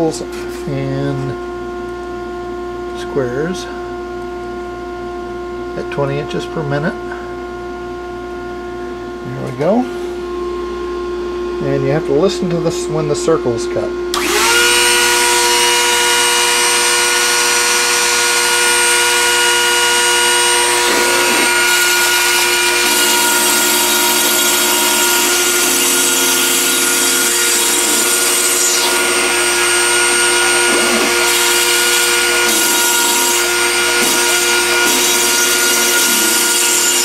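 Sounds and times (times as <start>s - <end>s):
router spindle motor whining: 14.1s - 37.0s
stepper motor gliding tones: 14.2s - 37.0s.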